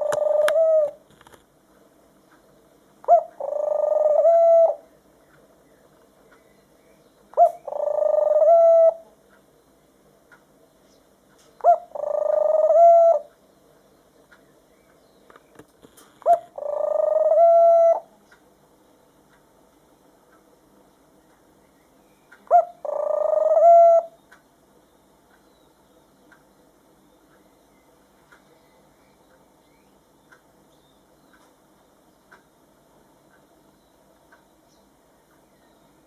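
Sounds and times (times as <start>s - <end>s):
dove cooing: 0.0s - 1.1s, 3.0s - 4.9s, 7.3s - 9.2s, 11.6s - 13.4s, 16.2s - 18.2s, 22.4s - 24.2s.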